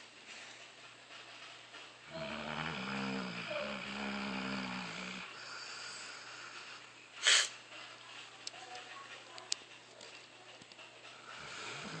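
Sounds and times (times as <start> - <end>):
dog snoring: 2.1 - 6.8, 11.4 - 12.0.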